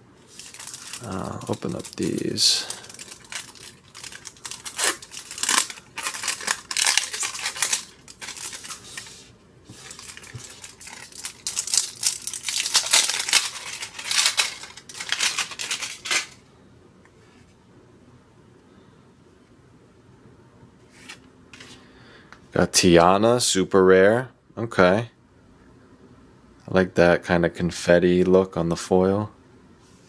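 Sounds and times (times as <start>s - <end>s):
wrapper tearing and crinkling: 0.3s - 16.4s.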